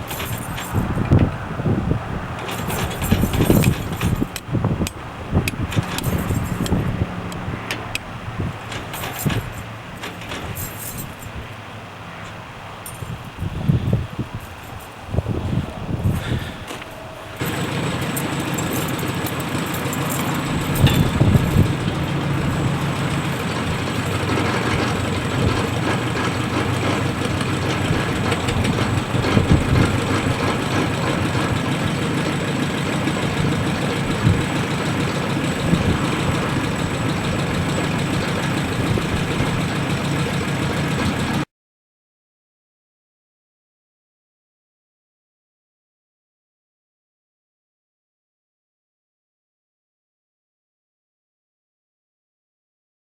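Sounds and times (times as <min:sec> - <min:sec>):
hay baler engine running: 0:00.0 - 0:11.4, 0:13.7 - 0:41.4
heavy mechanical knocks: 0:02.4 - 0:07.1, 0:07.7 - 0:11.2, 0:16.3 - 0:41.4.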